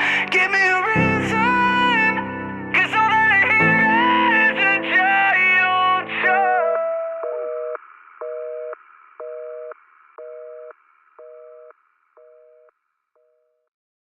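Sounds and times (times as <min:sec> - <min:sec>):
song with sung note: 0:00.0 - 0:07.3
telephone busy signal: 0:07.2 - 0:13.4.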